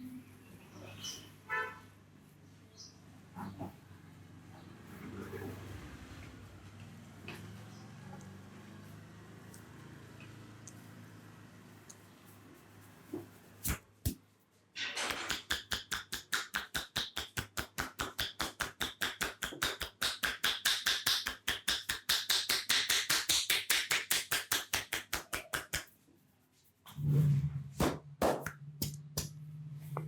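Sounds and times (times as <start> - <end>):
hands tapping head: 15.1 - 26.0.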